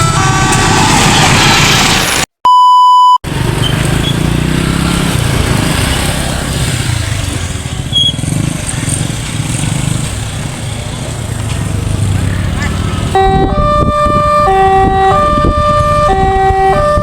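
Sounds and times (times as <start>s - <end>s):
electronic beep tone: 2.5s - 3.2s
vehicle engines rumbling: 3.2s - 17.0s.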